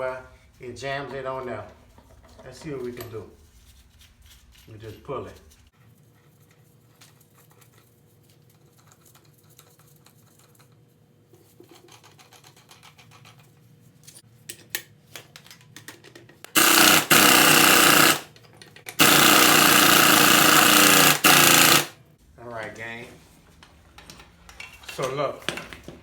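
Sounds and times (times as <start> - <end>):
tools clicking: 14.5 - 21.9
impact wrench hammering: 16.5 - 18.3, 19.0 - 21.9.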